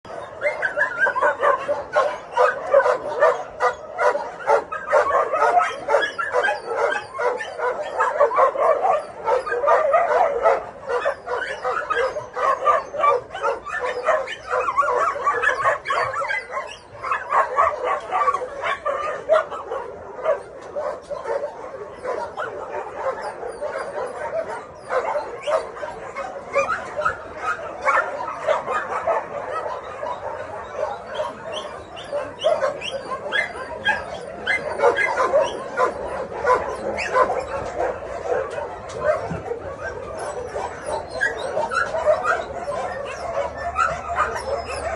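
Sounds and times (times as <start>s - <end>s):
dogs barking and yipping: 0.0s - 44.9s.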